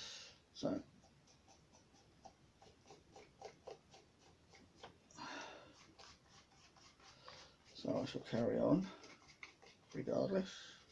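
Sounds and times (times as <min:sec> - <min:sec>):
paintbrush strokes on paper: 0:05.6 - 0:10.9.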